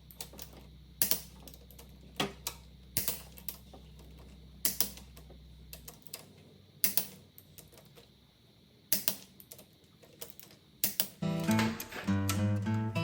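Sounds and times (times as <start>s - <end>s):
hand tools clicking and clinking: 10.2s - 12.6s.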